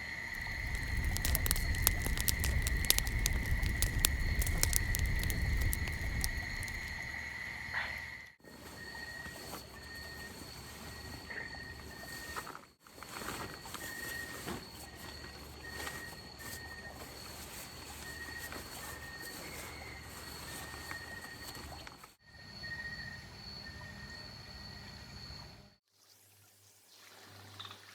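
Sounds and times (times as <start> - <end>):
insects trilling: 0.0 - 25.6
small rustles and clicks: 0.3 - 7.1.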